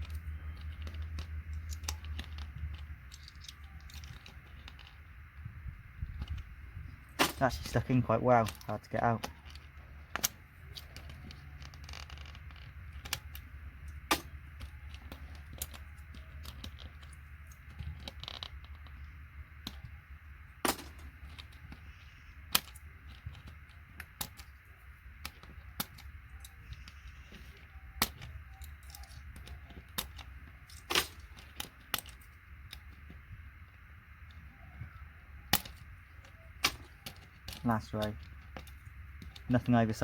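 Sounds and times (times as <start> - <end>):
plastic keys clicking and snapping: 0.0 - 5.0, 7.2 - 19.0, 25.2 - 32.9, 35.5 - 39.7
low steady hum: 0.0 - 40.0.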